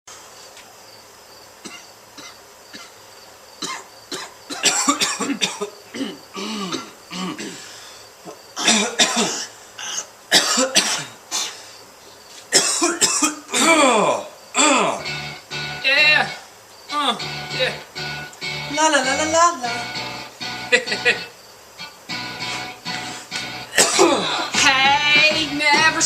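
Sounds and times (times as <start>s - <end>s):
person coughing hard: 1.6s - 2.9s, 3.6s - 7.7s, 8.6s - 11.6s, 12.5s - 15.0s, 23.7s - 24.6s.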